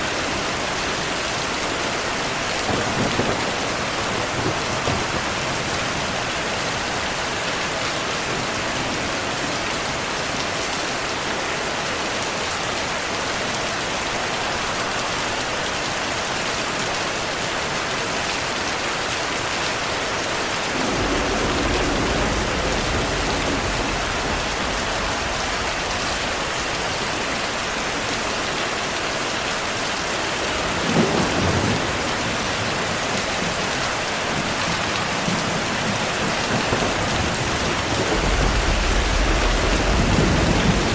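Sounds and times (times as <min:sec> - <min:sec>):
heavy rain falling: 0:00.0 - 0:40.9
thunder rumbling: 0:02.2 - 0:07.4, 0:20.1 - 0:28.6, 0:30.2 - 0:40.9
thunder clap: 0:02.6 - 0:06.8, 0:20.5 - 0:28.3, 0:30.5 - 0:40.9.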